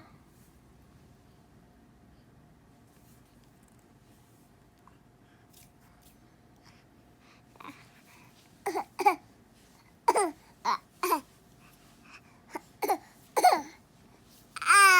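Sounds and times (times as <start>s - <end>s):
baby babbling: 10.1s - 11.2s, 14.6s - 14.9s.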